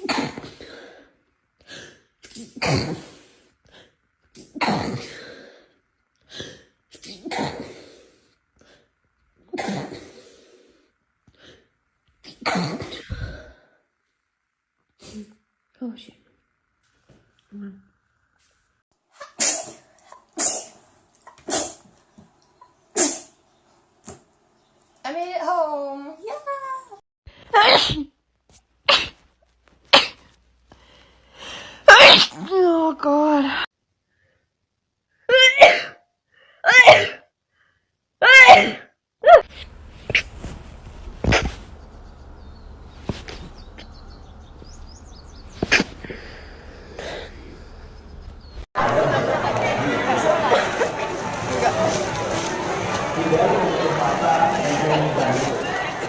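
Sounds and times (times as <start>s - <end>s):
woman sneezing: 19.2s - 21.8s, 27.5s - 28.1s, 31.9s - 32.5s, 35.3s - 36.0s, 36.6s - 37.2s, 38.2s - 39.5s
breathy sniff: 45.5s - 47.9s.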